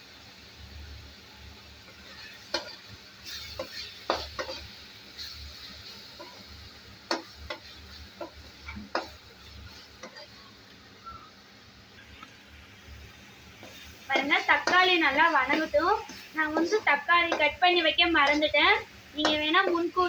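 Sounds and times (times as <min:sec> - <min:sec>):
food sizzling in a pan: 0:00.0 - 0:20.0
spoon stirring and scraping pan: 0:01.8 - 0:10.5, 0:12.0 - 0:20.0
spoon knocking against pan: 0:03.6 - 0:04.6, 0:07.1 - 0:09.2, 0:19.2 - 0:19.8.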